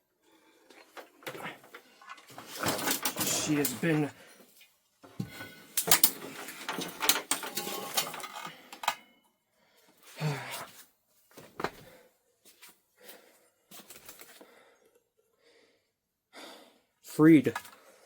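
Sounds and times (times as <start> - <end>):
television parts clicking and clattering: 0.7 - 4.3, 5.0 - 9.1.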